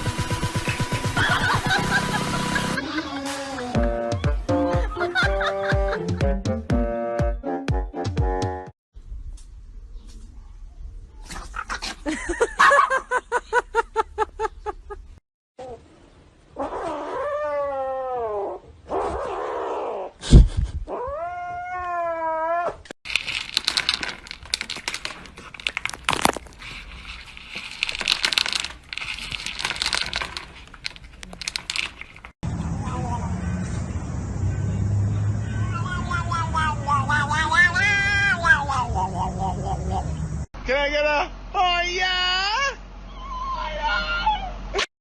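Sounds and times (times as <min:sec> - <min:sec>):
cats yowling and meowing: 0:20.9 - 0:22.9, 0:43.0 - 0:44.8
scuffling noise and clicks: 0:23.1 - 0:32.4.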